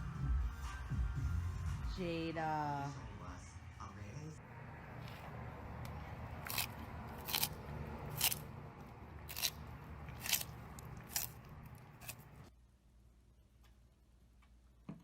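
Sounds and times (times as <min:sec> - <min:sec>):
animal chewing crunchy food: 0:06.0 - 0:12.5.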